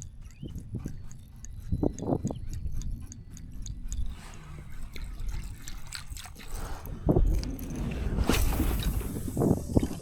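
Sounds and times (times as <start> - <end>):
faint rapid ticking: 0.0 - 7.8
wind rumbling on microphone: 0.0 - 10.0
water sloshing and splashing: 4.7 - 10.0.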